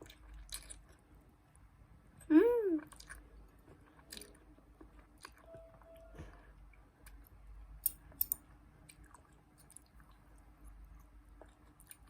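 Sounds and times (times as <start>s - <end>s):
child chewing noodles: 0.0s - 1.2s, 2.8s - 7.3s, 8.8s - 12.0s.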